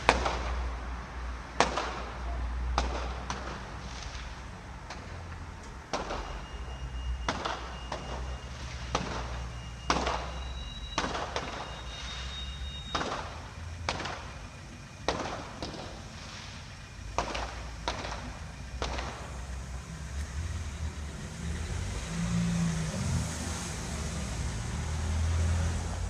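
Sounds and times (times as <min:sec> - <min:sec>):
fireworks bangs echoing: 0:00.0 - 0:20.1.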